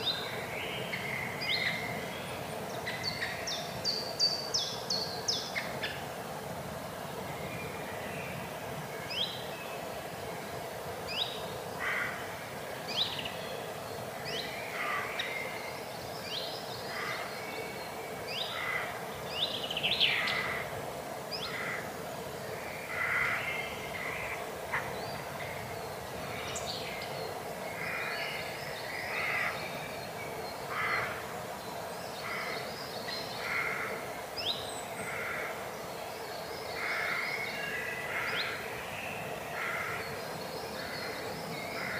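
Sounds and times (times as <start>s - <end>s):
crow cawing: 11.8s - 12.2s, 22.9s - 24.9s, 29.1s - 29.6s, 30.7s - 31.2s, 39.6s - 40.0s.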